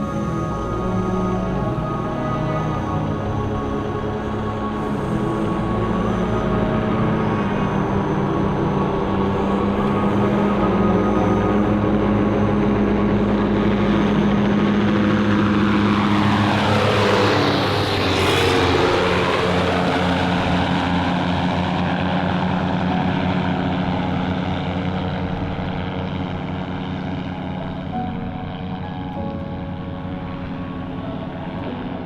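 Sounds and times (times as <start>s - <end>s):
propeller plane droning past: 0.0s - 32.0s.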